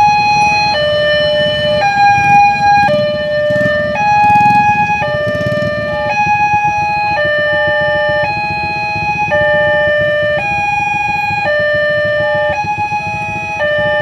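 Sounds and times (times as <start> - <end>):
level crossing warning siren: 0.0 - 14.0.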